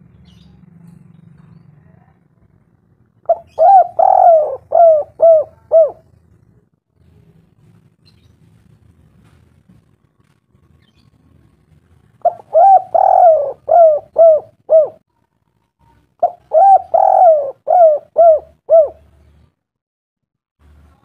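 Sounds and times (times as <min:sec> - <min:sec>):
bird calling: 0:03.3 - 0:06.1, 0:12.2 - 0:15.0, 0:16.2 - 0:19.1.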